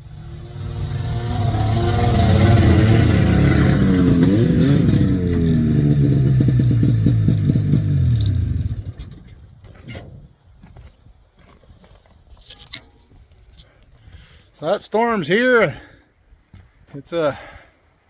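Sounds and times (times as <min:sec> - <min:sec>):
off-road vehicle engine running: 0:00.0 - 0:09.2.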